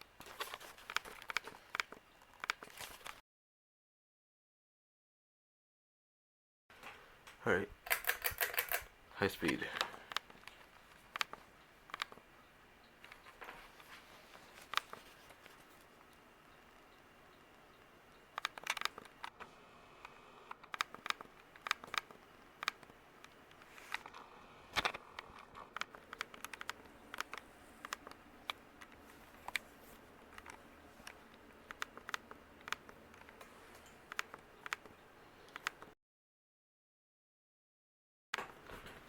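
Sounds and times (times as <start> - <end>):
ceiling fan motor hum: 6.7 - 35.9
sharp clicks and ticks: 7.8 - 13.4, 14.7 - 29.7, 30.3 - 35.9.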